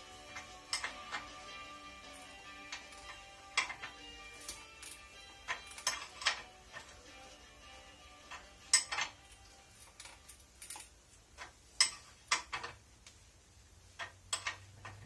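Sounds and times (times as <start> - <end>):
hand tools clinking on metal: 2.1 - 7.0, 8.3 - 10.9.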